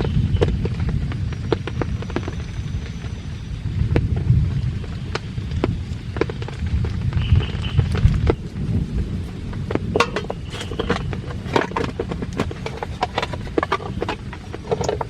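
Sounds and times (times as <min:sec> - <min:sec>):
heavy rain rumble: 0:00.0 - 0:15.0
sharp ticks of raindrops: 0:00.0 - 0:15.0.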